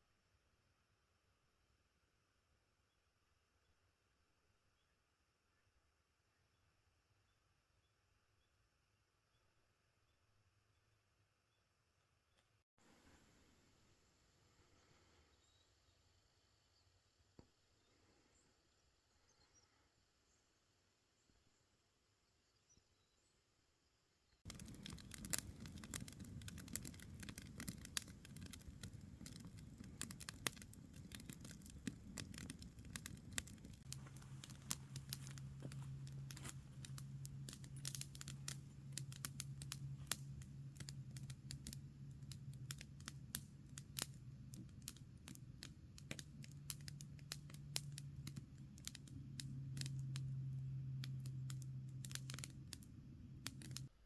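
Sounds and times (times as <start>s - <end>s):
crackling snaps and ticks: 24.5s - 53.9s
steady low hum: 28.2s - 53.8s.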